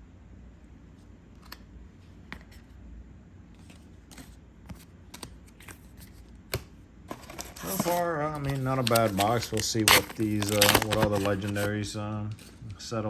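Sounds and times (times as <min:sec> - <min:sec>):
trading cards clicking and snapping: 0:05.1 - 0:05.8.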